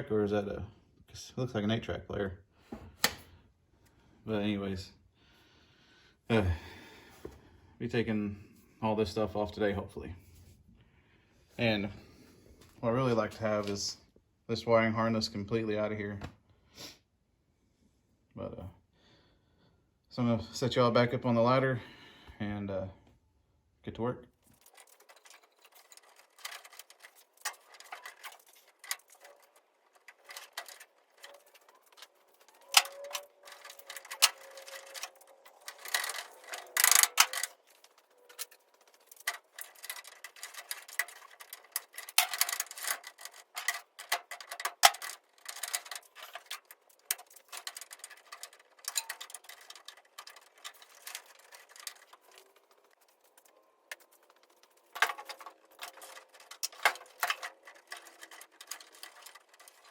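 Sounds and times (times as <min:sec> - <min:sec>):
hand tools clicking and tapping: 0:24.5 - 0:59.9.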